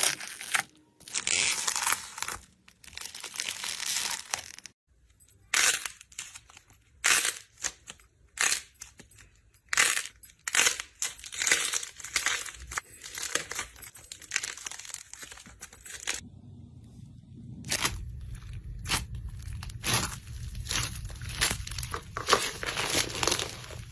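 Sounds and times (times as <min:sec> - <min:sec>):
quiet low hum: 0:15.8 - 0:23.9
slime crackling and popping: 0:17.6 - 0:23.9.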